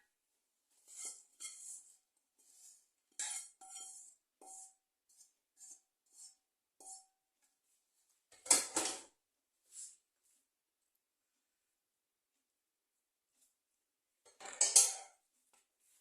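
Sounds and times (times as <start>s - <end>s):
metal spoon scraping metal pan: 0.9s - 7.2s, 14.3s - 15.2s.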